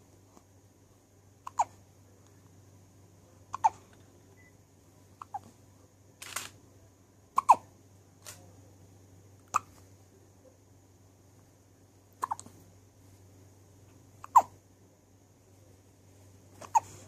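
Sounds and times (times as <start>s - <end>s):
person hiccuping: 7.4s - 7.6s, 12.2s - 12.4s.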